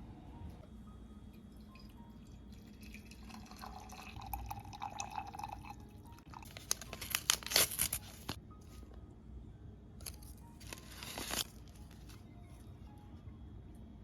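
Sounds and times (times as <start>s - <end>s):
liquid pouring into cup: 1.6s - 6.8s.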